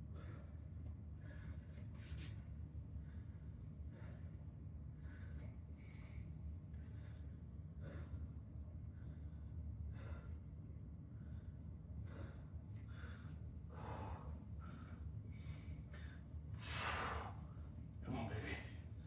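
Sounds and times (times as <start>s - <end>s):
steady low hum: 0.0s - 19.0s
man breathing hard and gasping: 12.1s - 15.1s, 16.6s - 17.5s.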